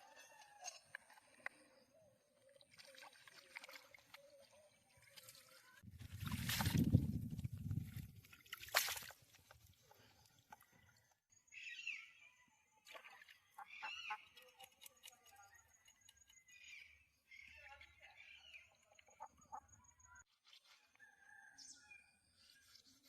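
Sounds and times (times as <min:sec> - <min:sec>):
water sloshing and splashing: 0:02.2 - 0:11.1
bird calls: 0:13.5 - 0:20.2.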